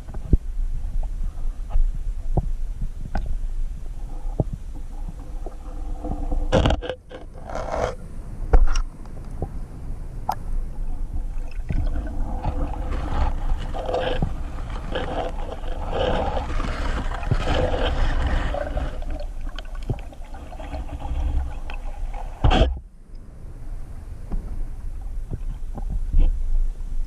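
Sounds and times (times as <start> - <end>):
underwater bubbling and gurgling: 0.0 - 7.9, 10.2 - 22.9.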